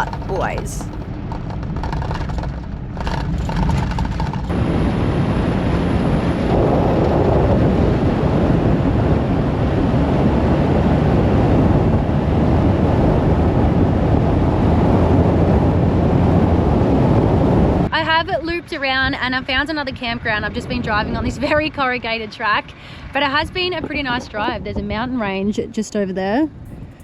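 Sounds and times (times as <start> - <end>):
vehicle driving on dirt track: 0.0 - 18.0.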